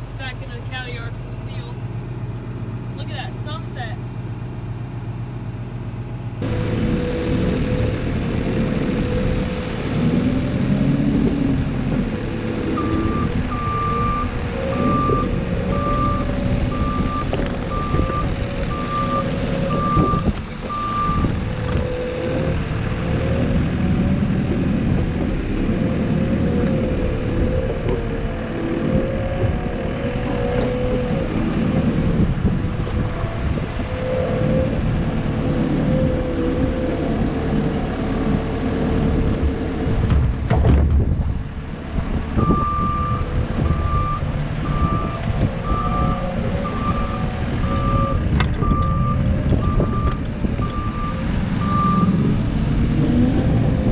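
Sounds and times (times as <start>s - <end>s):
tractor engine running: 0.0s - 53.9s
reversing alarm beeping: 12.7s - 21.3s, 42.4s - 52.2s.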